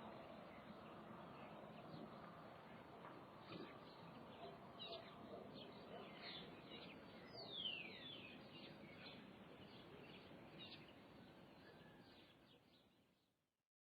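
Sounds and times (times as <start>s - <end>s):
small birds chirping: 3.4s - 13.0s.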